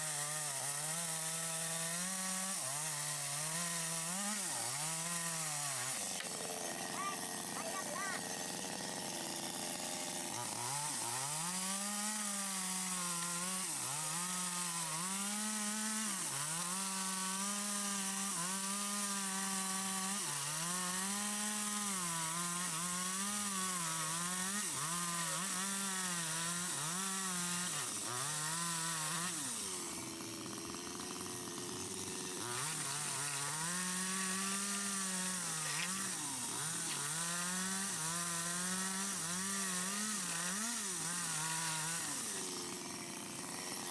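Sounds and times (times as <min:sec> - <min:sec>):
chainsaw ripping through wood: 0:00.0 - 0:43.9.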